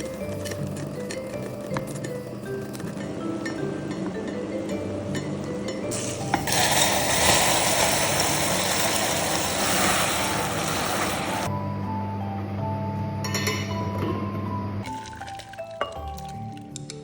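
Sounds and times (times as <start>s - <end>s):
soft background music: 0.0s - 17.0s.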